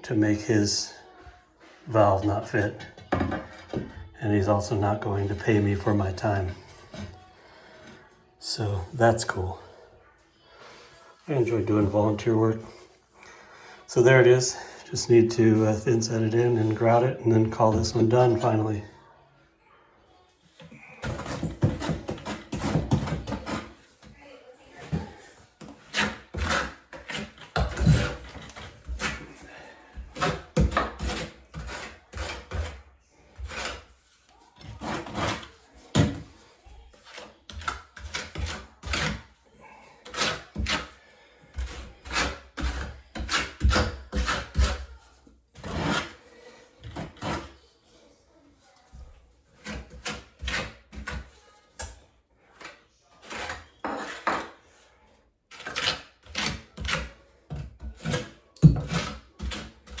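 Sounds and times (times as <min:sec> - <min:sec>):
trowel scraping mortar: 0:02.0 - 0:07.2, 0:15.3 - 0:18.6, 0:20.6 - 0:47.6, 0:48.9 - 0:51.9, 0:52.5 - 0:54.9, 0:55.5 - 1:00.0.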